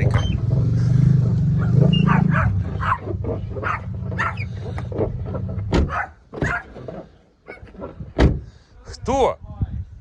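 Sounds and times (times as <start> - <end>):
low engine hum: 0.0 - 6.1
dog whining and yelping: 1.6 - 4.5.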